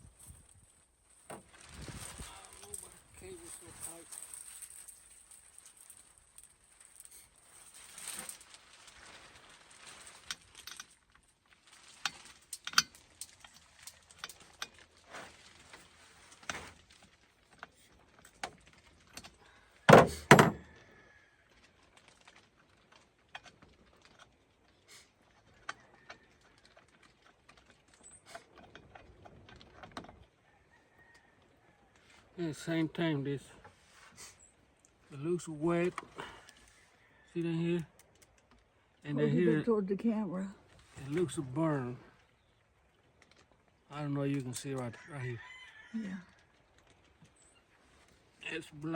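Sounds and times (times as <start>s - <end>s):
hand tools clinking and knocking: 19.9s - 20.7s.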